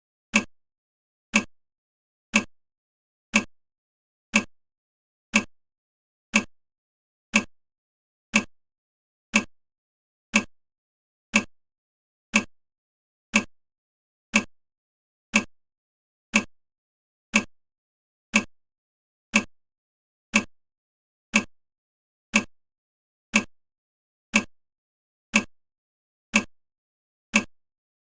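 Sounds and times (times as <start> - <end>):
timer ticking: 0.3 - 0.5, 1.3 - 1.5, 2.3 - 2.5, 3.3 - 3.5, 4.3 - 4.5, 5.3 - 5.5, 6.3 - 6.5, 7.3 - 7.5, 8.3 - 8.5, 9.3 - 9.5, 10.3 - 10.5, 11.3 - 11.5, 12.3 - 12.5, 13.3 - 13.5, 14.3 - 14.5, 15.3 - 15.5, 16.3 - 16.5, 17.3 - 17.5, 18.3 - 18.5, 19.3 - 19.5, 20.3 - 20.5, 21.3 - 21.5, 22.3 - 22.5, 23.3 - 23.5, 24.3 - 24.5, 25.3 - 25.5, 26.3 - 26.5, 27.3 - 27.6.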